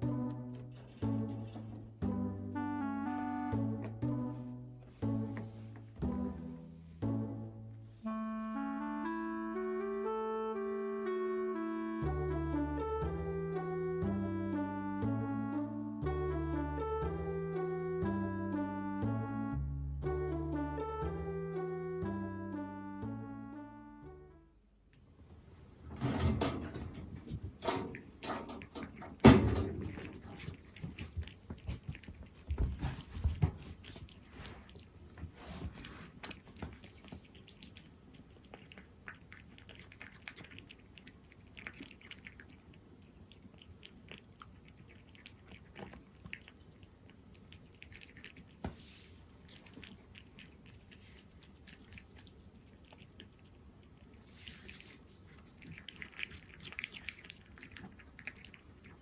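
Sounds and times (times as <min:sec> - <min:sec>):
cat chewing wet food: 0:27.3 - 0:59.0.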